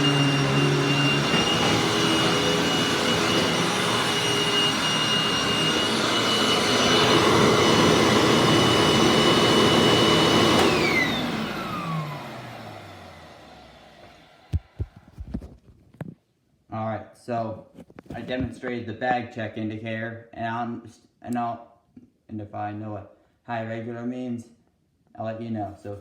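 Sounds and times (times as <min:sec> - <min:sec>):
vacuum cleaner motor whining: 0:00.0 - 0:15.5.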